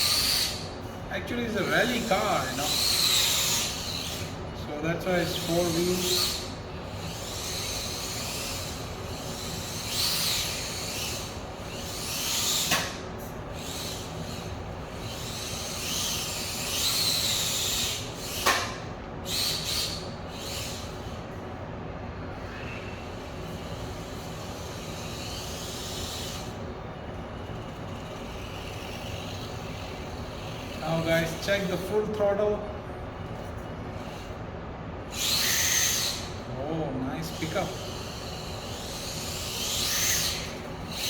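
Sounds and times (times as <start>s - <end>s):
rc car electric motor whining: 0.0s - 21.4s, 22.3s - 41.0s
sharp click: 12.6s - 13.0s, 18.4s - 18.8s.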